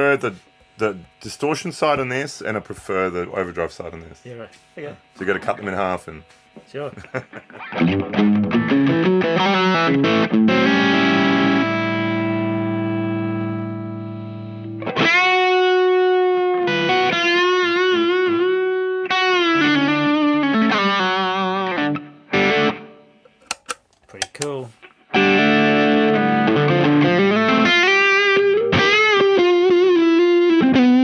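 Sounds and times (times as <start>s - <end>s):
distorted electric guitar: 7.4s - 18.4s.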